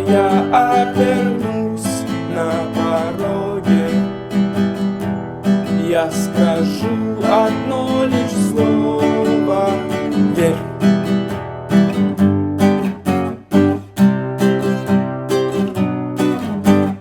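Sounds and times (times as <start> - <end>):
strummed acoustic guitar: 0.0 - 17.0.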